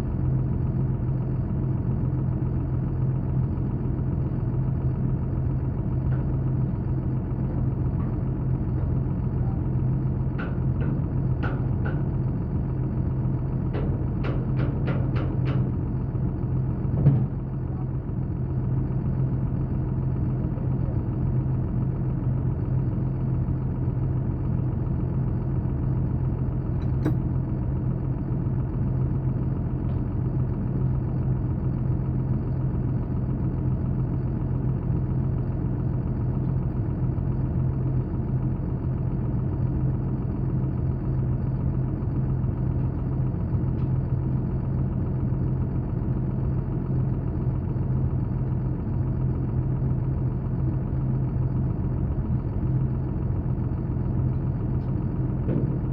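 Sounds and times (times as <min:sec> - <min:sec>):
machine low drone: 0:00.0 - 0:55.9.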